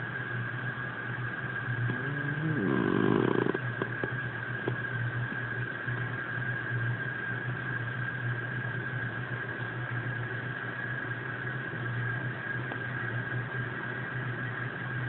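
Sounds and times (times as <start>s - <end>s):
cat snoring: 1.8s - 4.1s.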